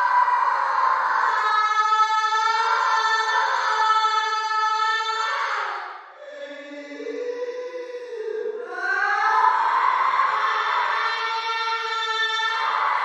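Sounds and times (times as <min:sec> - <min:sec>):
woman moaning: 0:06.2 - 0:09.3.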